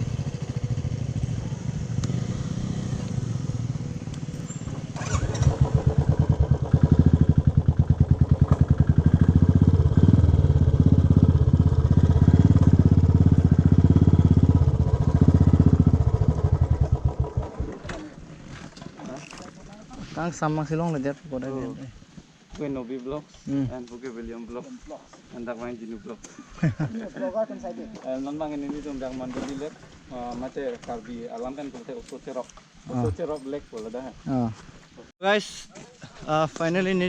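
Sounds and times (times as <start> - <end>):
small engine throbbing: 0.0 - 18.3.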